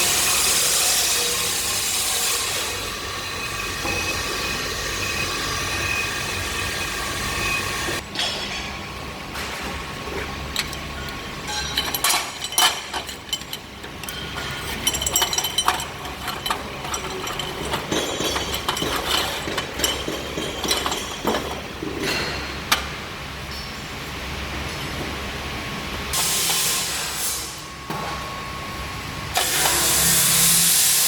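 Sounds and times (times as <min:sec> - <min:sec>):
low machine hum: 0:02.4 - 0:26.2
metal tools clinking: 0:10.6 - 0:22.4.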